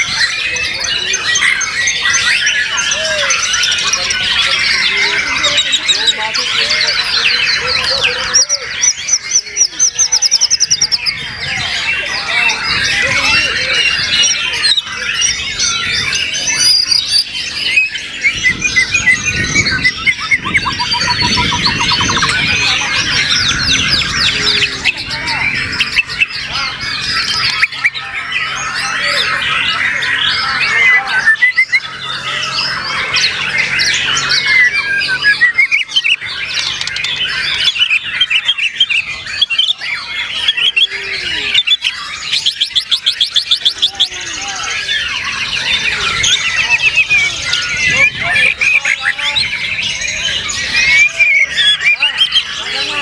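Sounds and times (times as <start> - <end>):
bird singing varied whistled phrases: 30.8 - 32.1, 34.1 - 44.1.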